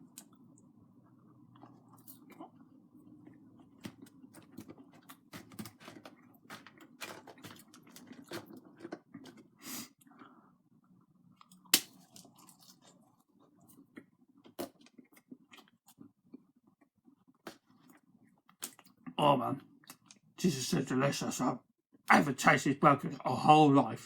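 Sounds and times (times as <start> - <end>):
person chewing crunchy food: 0.0 - 10.3, 11.3 - 19.1.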